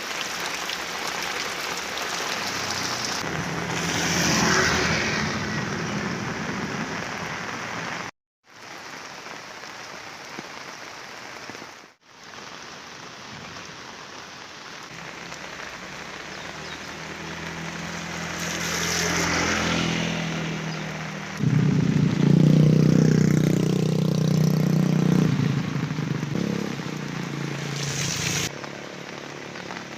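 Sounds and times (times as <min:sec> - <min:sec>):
heavy rain pouring: 0:00.0 - 0:29.9
vehicle engine hum: 0:15.0 - 0:29.9.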